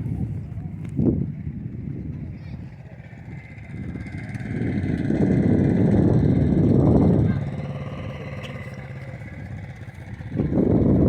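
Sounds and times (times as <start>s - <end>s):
vehicle engine running: 0.0s - 11.0s.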